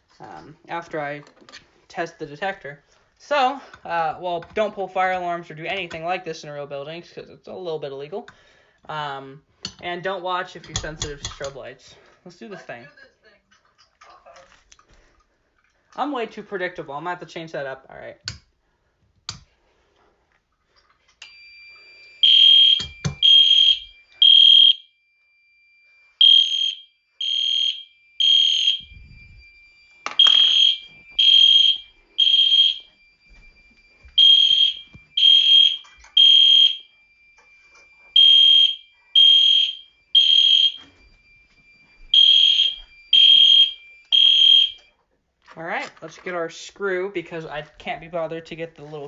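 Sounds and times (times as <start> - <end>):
faint steady tone: 19.9 - 45.2
fire alarm horns beeping: 21.2 - 45.0.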